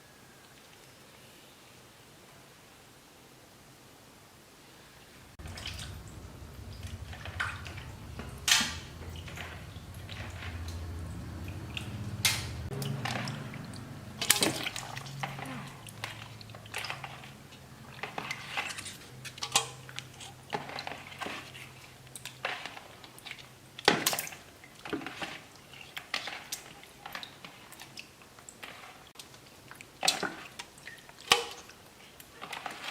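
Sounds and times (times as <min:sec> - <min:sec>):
low hum: 0:05.4 - 0:16.6
water splashing in a basin: 0:05.4 - 0:32.9.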